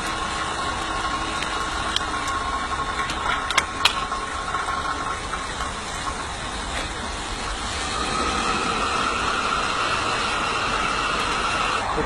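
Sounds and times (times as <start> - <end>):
electric fan rushing with whine: 0.0 - 12.0.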